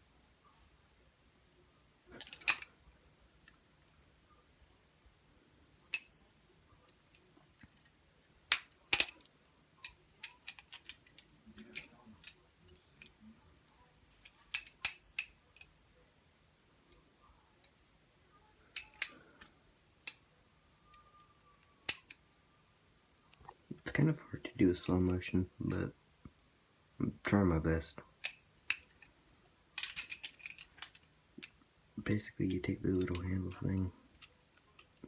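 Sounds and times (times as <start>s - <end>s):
metallic ring: 5.9s - 6.4s, 14.6s - 15.7s, 28.2s - 29.0s.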